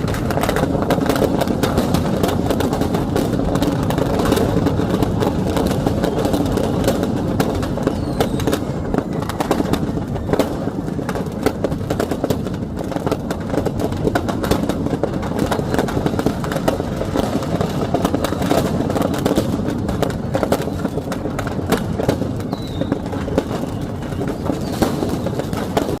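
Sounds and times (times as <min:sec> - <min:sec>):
fireworks crackling pops: 0:00.0 - 0:26.0
firework whistles: 0:05.3 - 0:11.8, 0:20.3 - 0:26.0.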